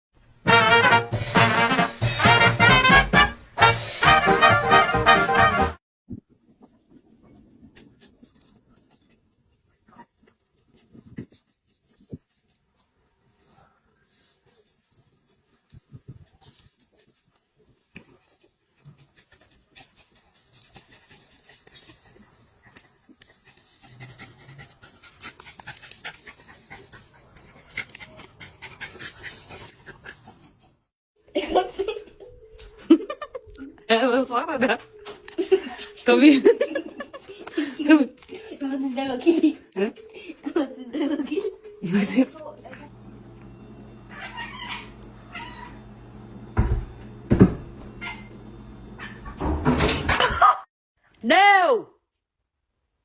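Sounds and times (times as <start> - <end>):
dog panting: 14.0 - 30.9
cat meowing: 44.1 - 45.8.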